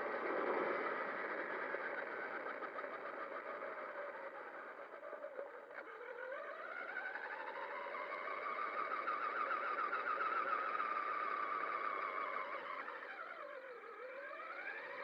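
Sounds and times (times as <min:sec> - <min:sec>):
toy truck electric motor whining: 0:03.5 - 0:15.0.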